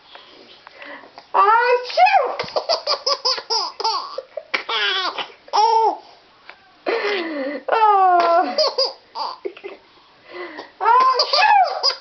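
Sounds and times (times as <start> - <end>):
small child laughing: 2.5 - 6.0, 8.2 - 9.8, 10.8 - 12.0.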